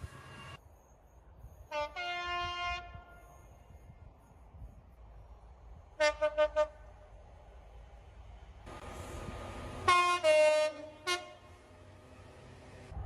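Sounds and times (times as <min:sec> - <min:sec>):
passing train rushing: 0:00.0 - 0:00.6, 0:02.8 - 0:13.0
train horn: 0:01.7 - 0:03.4, 0:06.0 - 0:06.9, 0:09.9 - 0:11.7.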